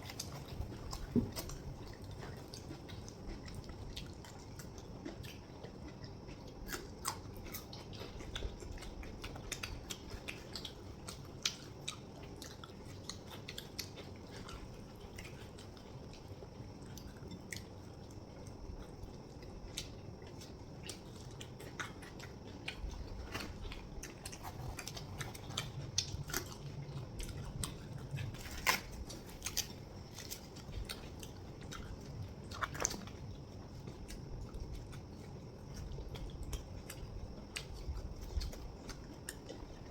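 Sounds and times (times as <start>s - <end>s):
people chewing food: 0.0s - 39.9s.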